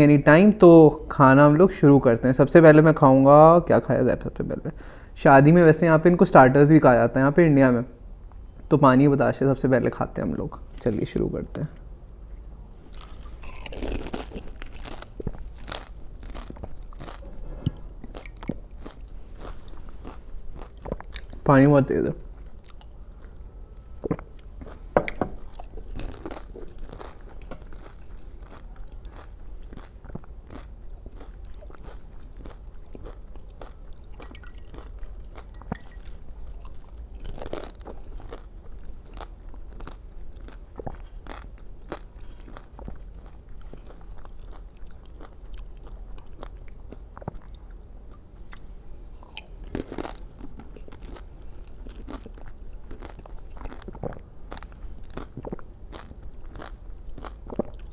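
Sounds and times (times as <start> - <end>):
crunching crisp snack shells: 12.9 - 17.3, 18.0 - 22.0, 25.7 - 47.2, 49.4 - 57.9.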